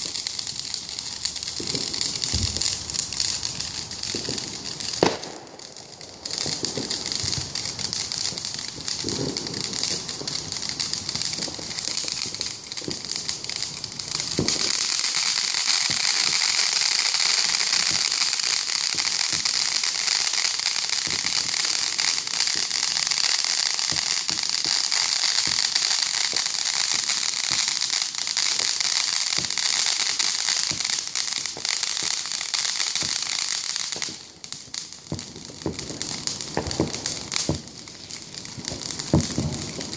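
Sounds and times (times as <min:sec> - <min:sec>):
low firework booms: 0:00.0 - 0:15.1, 0:34.0 - 0:39.9
fireworks crackling: 0:00.0 - 0:39.9.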